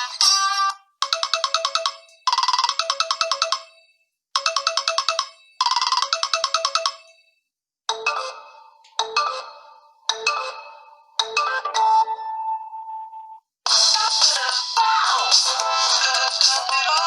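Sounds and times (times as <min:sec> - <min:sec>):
tinkling electronic ringtone: 0:00.0 - 0:13.4
chiming ringtone: 0:00.4 - 0:13.4.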